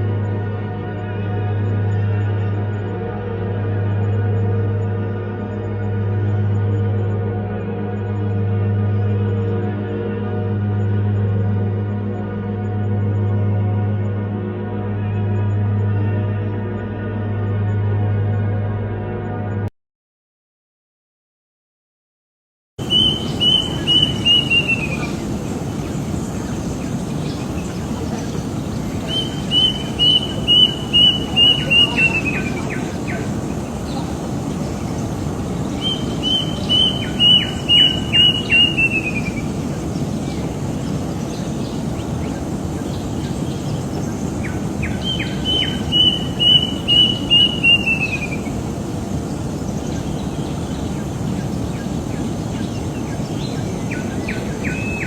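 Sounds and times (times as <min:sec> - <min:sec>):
bird singing high notes: 0:22.8 - 0:55.0.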